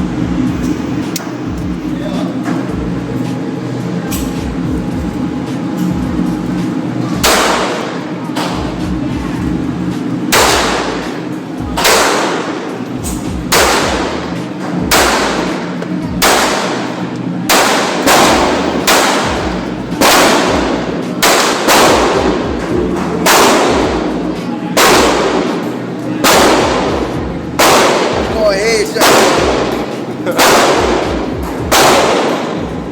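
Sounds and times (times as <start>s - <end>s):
gunshots with ringing tail: 7.2s - 8.6s, 10.3s - 11.2s, 11.8s - 12.7s, 13.4s - 22.5s, 23.2s - 24.1s, 24.8s - 32.7s.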